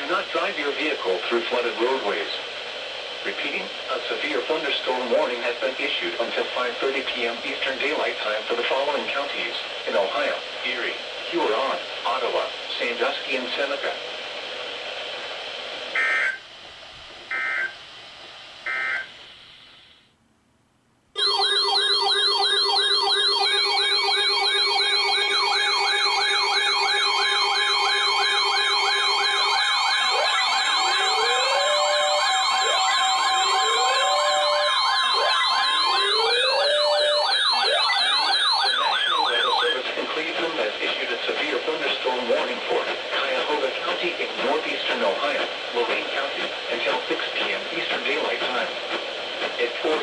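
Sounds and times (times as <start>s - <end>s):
electronic sirens wailing: 16.0s - 16.4s, 17.3s - 17.8s, 18.7s - 19.1s, 21.2s - 39.9s
short data bursts: 22.7s - 39.8s.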